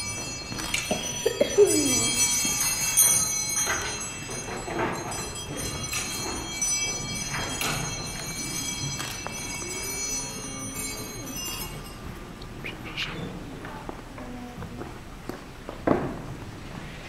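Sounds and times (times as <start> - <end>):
bells ringing: 0.0 - 12.6.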